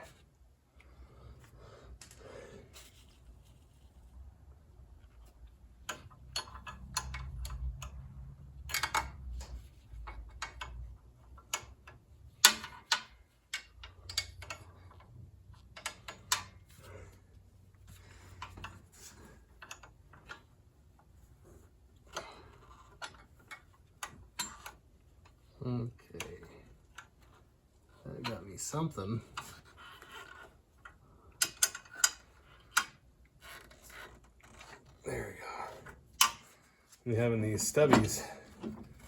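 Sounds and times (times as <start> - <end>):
wrench clicking on metal bolts: 5.8 - 8.0, 8.6 - 15.0, 31.4 - 34.8.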